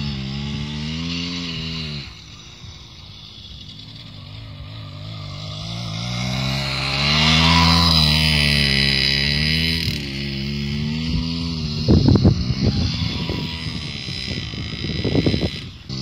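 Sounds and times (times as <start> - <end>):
motorcycle engine revving: 0.0 - 16.0.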